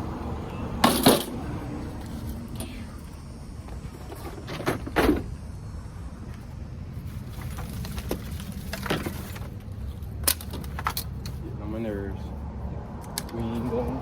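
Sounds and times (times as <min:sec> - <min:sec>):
steady low rumble: 0:00.0 - 0:10.3
objects knocking and clunking: 0:07.4 - 0:11.4.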